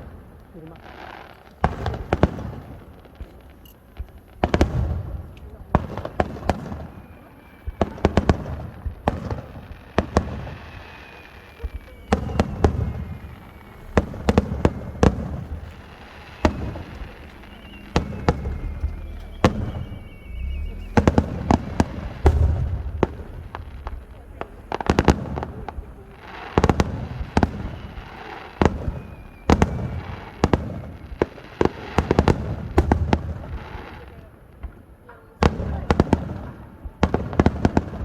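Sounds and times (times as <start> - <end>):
sharp crackling pops: 0.4 - 34.8
firework shells booming: 1.5 - 38.0
faint long whistle: 5.0 - 34.3.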